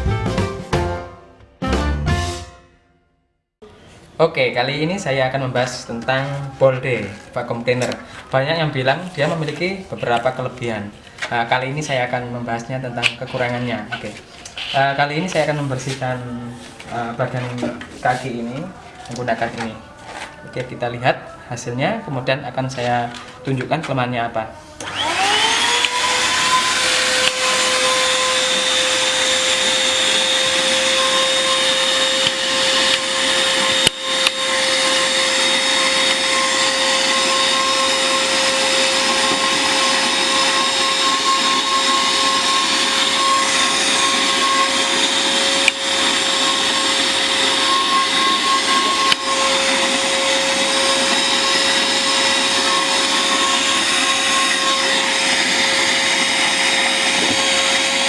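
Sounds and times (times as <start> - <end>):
vacuum cleaner motor whine: 24.6 - 58.0.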